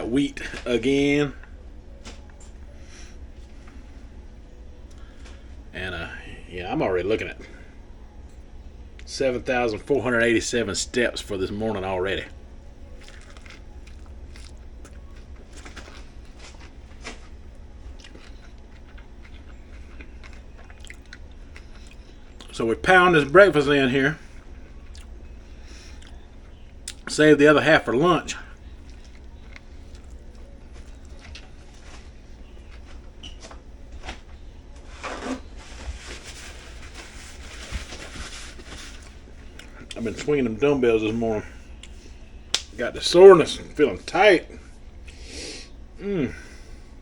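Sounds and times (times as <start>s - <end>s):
steady low hum: 0.0s - 47.0s
sandwich being handled and eaten: 12.8s - 22.5s, 28.6s - 40.3s
rustling from handling things: 34.8s - 39.2s.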